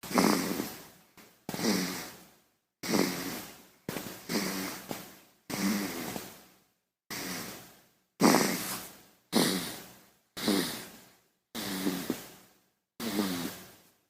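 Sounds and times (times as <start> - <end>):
baby snoring: 0.0 - 0.9, 1.5 - 2.2, 2.8 - 3.6, 4.2 - 4.9, 5.5 - 6.4, 7.1 - 11.0, 11.6 - 12.4, 13.0 - 13.8.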